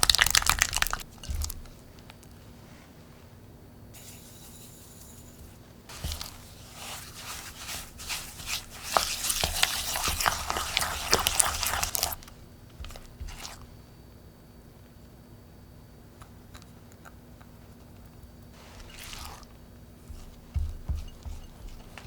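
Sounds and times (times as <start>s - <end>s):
wrapper crinkling and tearing: 0.0s - 1.6s, 8.5s - 12.2s.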